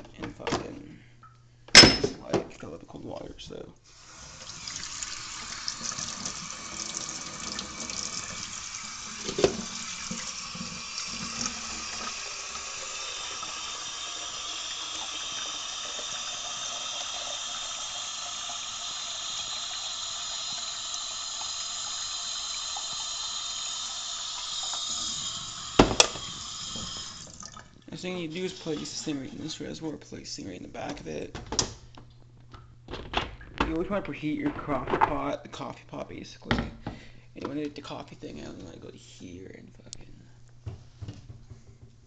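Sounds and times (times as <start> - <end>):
tap water filling a reservoir: 3.9 - 29.7.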